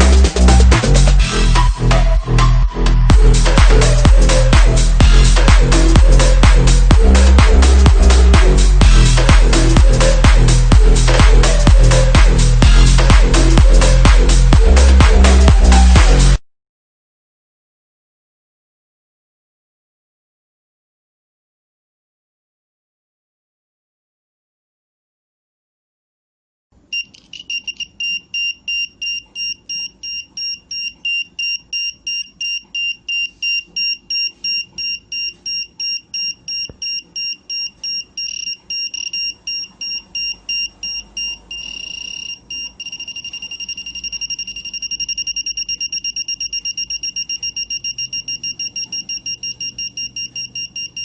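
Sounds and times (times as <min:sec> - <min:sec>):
buzzer beeping: 0:26.9 - 0:51.0.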